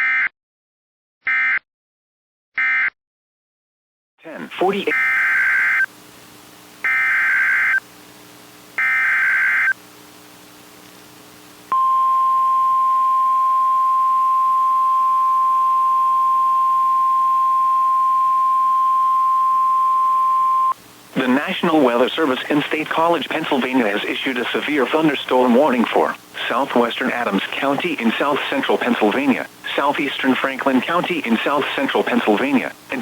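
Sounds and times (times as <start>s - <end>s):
steady warning alarm tone: 4.7s - 5.9s, 6.8s - 7.8s, 8.8s - 9.8s, 11.7s - 20.8s
screeching data bursts: 6.8s - 7.8s, 8.8s - 9.8s.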